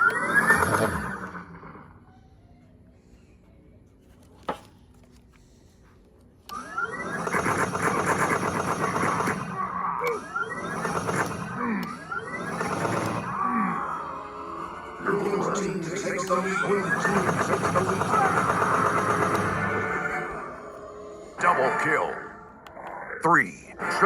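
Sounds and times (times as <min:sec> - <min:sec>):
laser tag firing sound effects: 0:06.5 - 0:13.5, 0:16.1 - 0:20.3.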